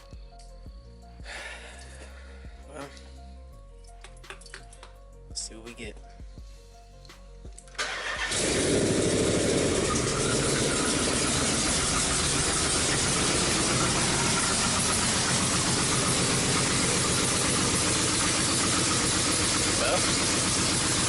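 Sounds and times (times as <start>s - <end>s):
car engine starting and idling: 7.7s - 21.0s.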